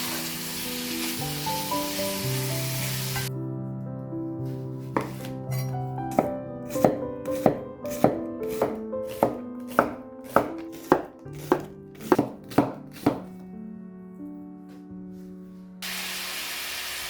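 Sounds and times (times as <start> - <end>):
soft background music: 0.0 - 15.8
knife chopping on a cutting board: 5.0 - 13.4.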